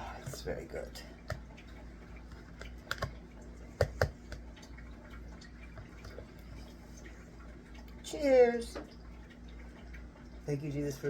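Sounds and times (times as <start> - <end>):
spoon tapping plastic cup: 2.8 - 3.1, 3.8 - 4.4.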